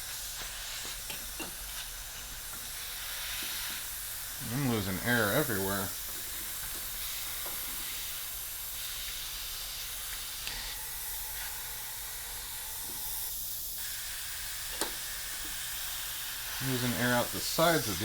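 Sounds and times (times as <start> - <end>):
compressed air hissing: 0.0 - 18.0.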